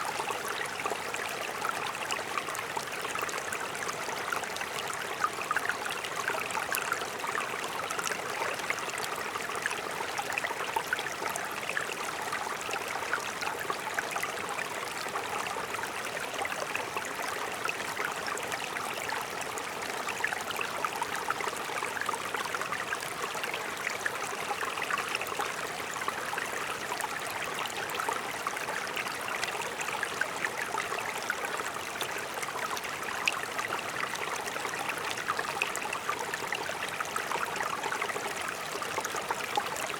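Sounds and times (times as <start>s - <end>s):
stream flowing over rocks: 0.0s - 39.9s.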